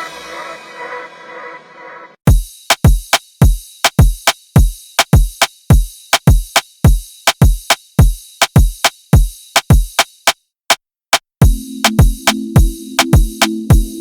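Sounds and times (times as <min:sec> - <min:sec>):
deep kick drum: 0:02.3 - 0:10.0, 0:11.4 - 0:14.0
sharp drum machine clicks: 0:02.3 - 0:14.0.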